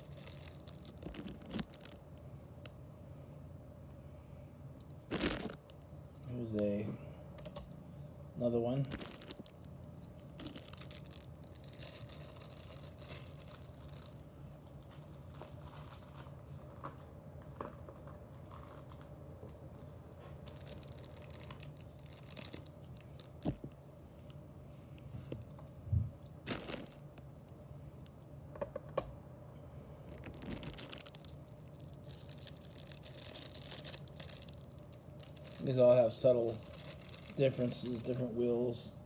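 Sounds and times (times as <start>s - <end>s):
plastic and cardboard crinkling: 0.0s - 2.1s, 5.1s - 5.8s, 8.7s - 17.0s, 20.2s - 23.8s, 26.5s - 27.3s, 30.0s - 38.4s
steady low hum: 0.0s - 39.0s.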